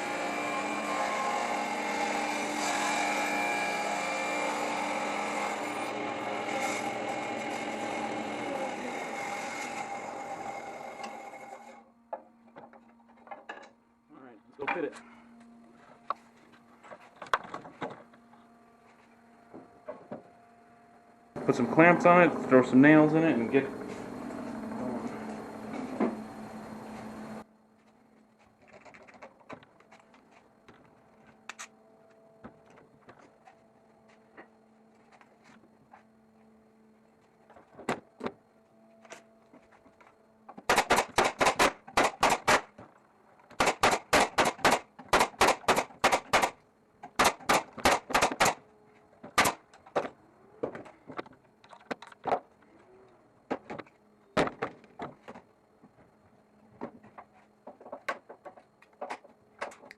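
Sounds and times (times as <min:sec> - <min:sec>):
hammering nails into wood: 0:40.6 - 0:42.7, 0:43.5 - 0:48.6, 0:49.3 - 0:50.1.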